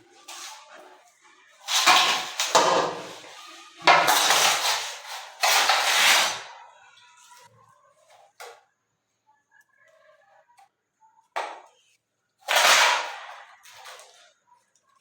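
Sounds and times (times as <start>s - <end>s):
trowel scraping mortar: 1.6s - 6.7s, 12.5s - 14.0s.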